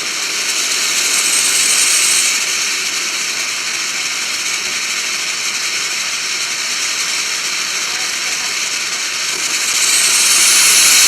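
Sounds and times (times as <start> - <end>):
firework fountain hissing: 0.0 - 11.0
high whistle: 9.4 - 11.0.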